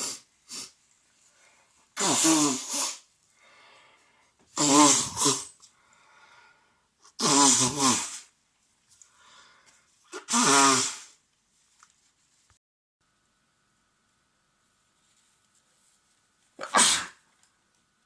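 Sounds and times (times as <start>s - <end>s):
man sneezing wetly: 2.0s - 3.0s, 4.6s - 5.6s, 7.2s - 8.3s, 10.1s - 11.1s, 16.6s - 17.2s.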